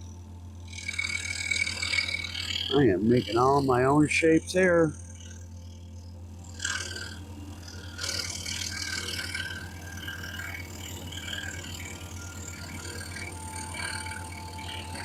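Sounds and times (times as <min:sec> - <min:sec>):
scroll saw humming: 0:00.0 - 0:15.0
saw blade cutting wood: 0:00.7 - 0:04.0.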